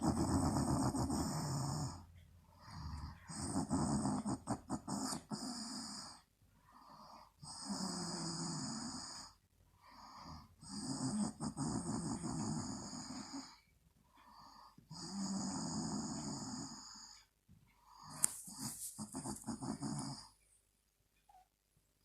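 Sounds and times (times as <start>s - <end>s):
woman snoring: 0.0s - 2.0s, 2.6s - 6.2s, 6.9s - 9.4s, 10.0s - 13.6s, 14.4s - 17.2s, 17.9s - 20.3s.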